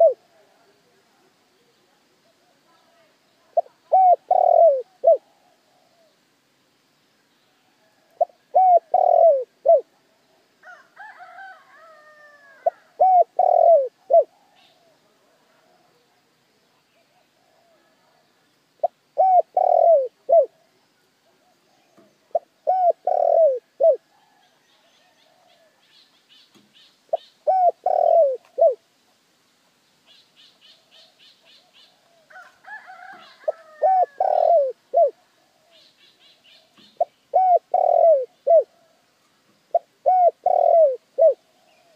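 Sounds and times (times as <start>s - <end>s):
dove cooing: 0.0s - 0.3s, 3.5s - 6.2s, 7.9s - 10.0s, 11.2s - 15.0s, 18.8s - 25.8s, 27.1s - 28.8s, 30.7s - 39.0s, 39.6s - 41.9s.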